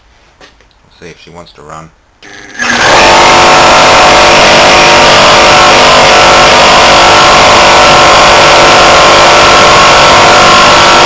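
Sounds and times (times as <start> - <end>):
refrigeration compressor running: 2.2 - 11.0.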